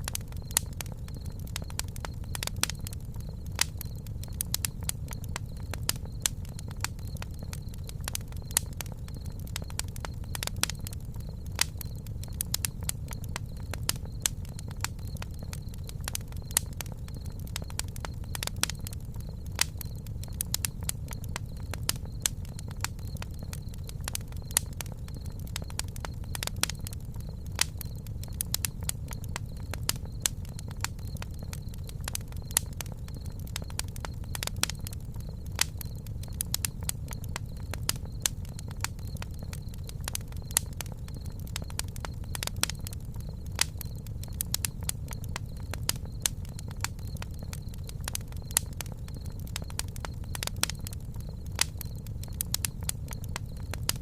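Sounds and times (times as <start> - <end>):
campfire flames rumbling: 0.0 - 54.0
wood crackling and popping: 0.0 - 54.0.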